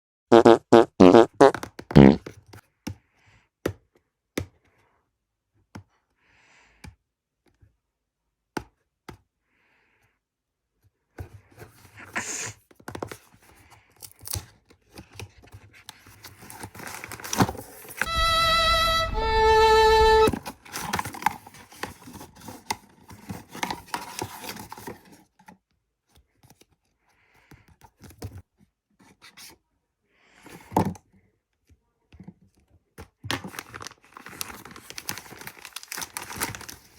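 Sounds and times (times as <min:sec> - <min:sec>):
package being handled and opened: 0:14.0 - 0:18.0, 0:20.6 - 0:25.6, 0:33.3 - 0:36.9
loud steady tones: 0:18.0 - 0:20.4.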